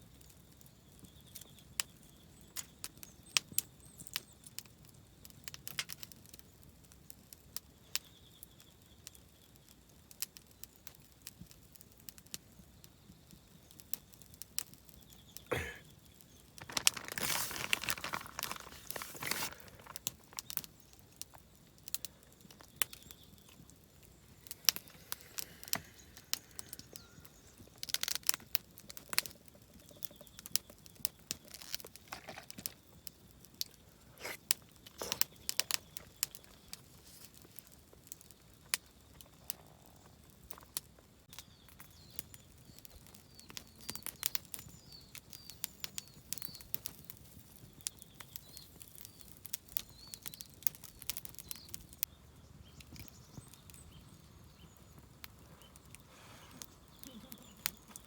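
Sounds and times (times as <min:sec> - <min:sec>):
small birds chirping: 0:00.2 - 0:58.0
crinkling and rustling: 0:16.6 - 0:20.7, 0:31.3 - 0:33.0.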